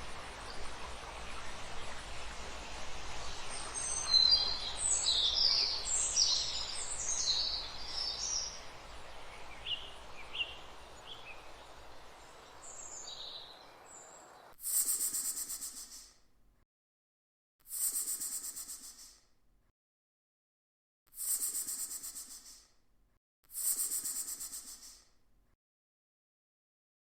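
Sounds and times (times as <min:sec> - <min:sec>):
bird chirping: 0:00.0 - 0:15.8
steady background hiss: 0:00.0 - 0:16.0
rapid high rattling hiss: 0:17.7 - 0:19.1, 0:21.2 - 0:22.5, 0:23.5 - 0:25.1.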